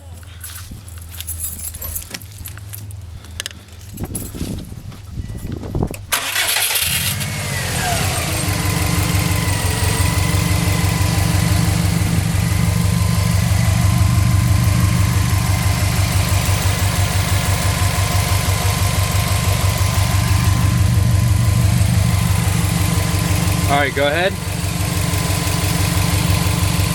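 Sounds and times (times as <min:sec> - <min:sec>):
car engine starting and idling: 0:05.6 - 0:26.9.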